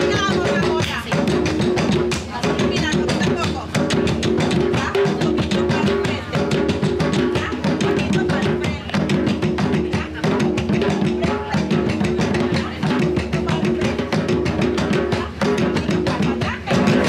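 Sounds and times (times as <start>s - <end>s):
fast drumming music: 0.0s - 17.0s.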